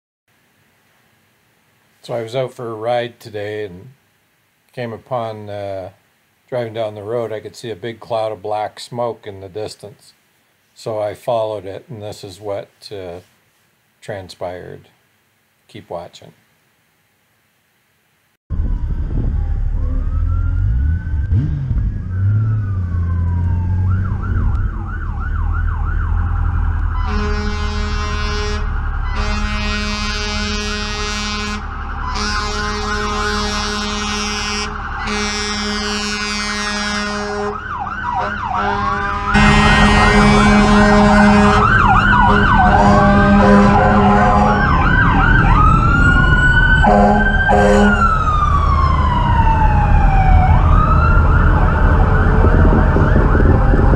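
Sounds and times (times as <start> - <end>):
low engine rumble: 18.5 - 36.3
fire engine sirens wailing: 18.5 - 53.9
air horn blasts: 27.0 - 44.8, 46.8 - 48.1.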